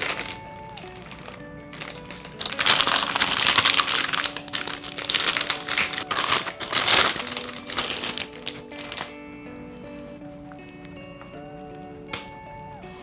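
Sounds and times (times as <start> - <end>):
packaging crinkling and rustling: 0.0 - 9.2
soft background music: 0.0 - 13.0.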